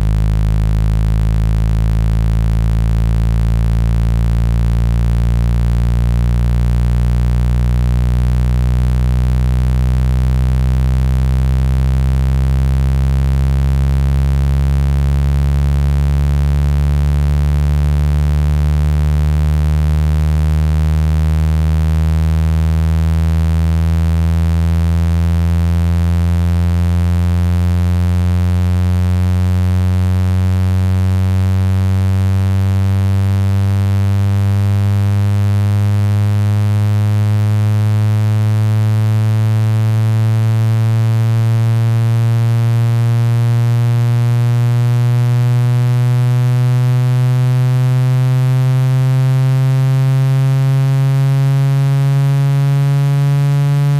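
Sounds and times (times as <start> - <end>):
buzzy electronic tone rising: 49.8 - 53.9.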